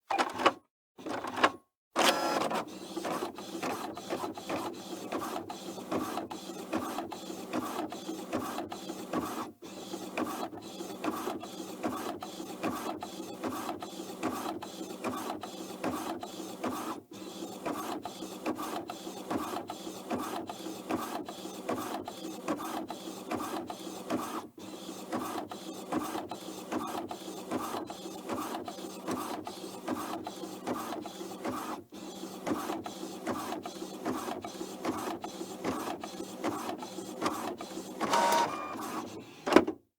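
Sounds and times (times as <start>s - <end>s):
printer whirring and clattering: 0.1s - 39.8s.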